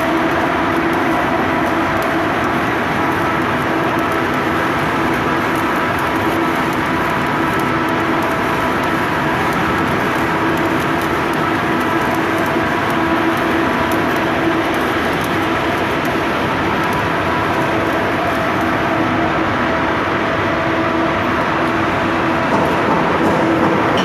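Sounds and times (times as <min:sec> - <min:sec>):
fine crackle: 0:00.0 - 0:19.0
industrial machine noise: 0:00.0 - 0:24.0.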